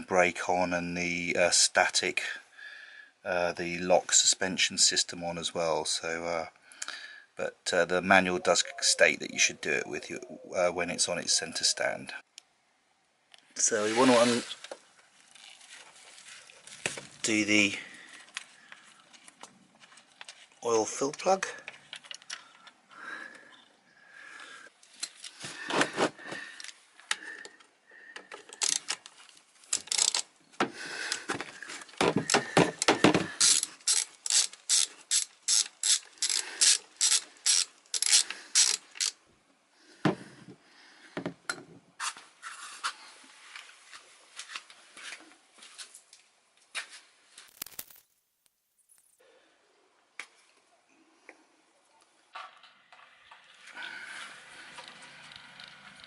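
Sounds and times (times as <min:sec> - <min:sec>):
ratchet wrench clicking: 0:28.6 - 0:29.0, 0:29.7 - 0:30.2, 0:33.4 - 0:39.2.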